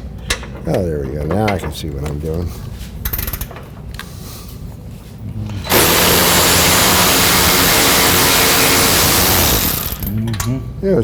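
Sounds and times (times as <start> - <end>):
power tool whirring: 5.6 - 10.2.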